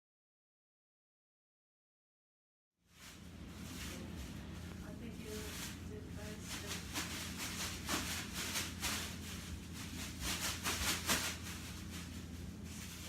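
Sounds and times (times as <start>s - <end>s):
rustling scraping strokes: 2.9s - 13.0s.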